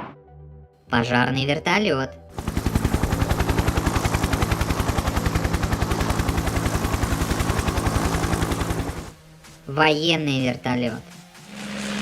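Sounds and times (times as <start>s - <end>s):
helicopter rotor chop: 2.3s - 9.2s, 10.0s - 12.0s.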